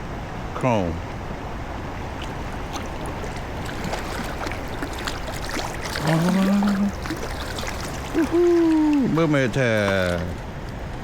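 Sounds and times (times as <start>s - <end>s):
river current rushing: 1.5s - 11.0s
small splashes and clicks: 2.2s - 10.8s
man's wordless vocal sound: 6.0s - 7.0s.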